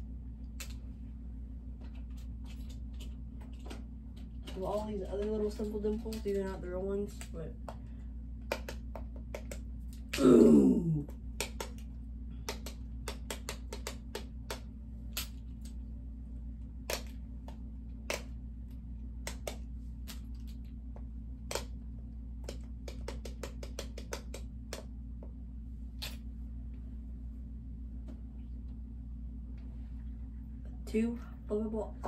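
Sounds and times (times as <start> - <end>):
steady low hum: 0.0 - 32.0
plastic fidget toys clicking: 4.4 - 7.4, 12.5 - 15.8, 22.4 - 24.9.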